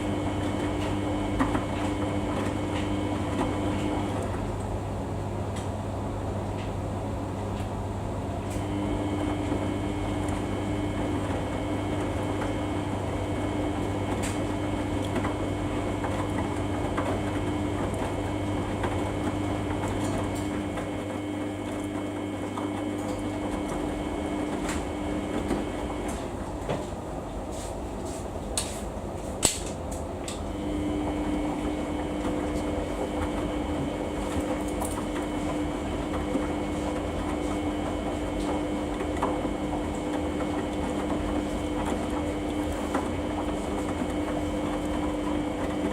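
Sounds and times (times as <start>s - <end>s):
washing machine drum whirring: 0.0s - 45.9s.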